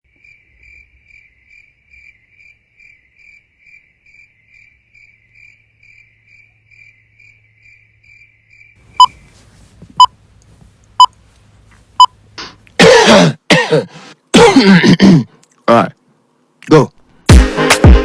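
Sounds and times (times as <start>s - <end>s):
cricket chirping: 0.1s - 9.1s.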